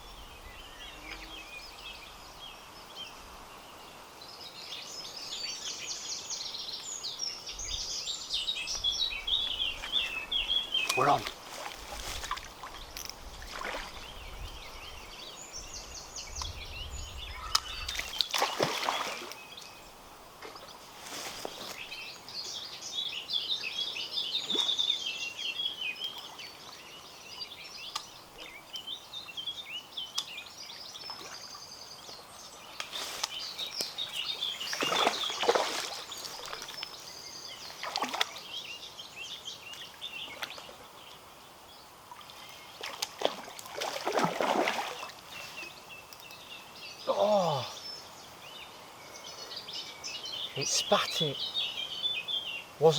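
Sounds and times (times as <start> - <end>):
songbirds chirping and singing: 0.0 - 52.9
fish splashing at water surface: 17.9 - 19.3, 34.7 - 36.8, 42.8 - 45.2.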